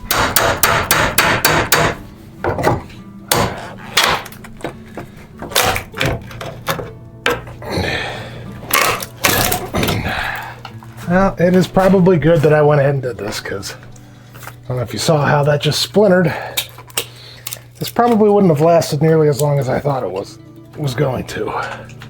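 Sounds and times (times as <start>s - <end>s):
wood splintering: 0.0s - 2.0s, 2.6s - 7.6s, 8.7s - 10.5s.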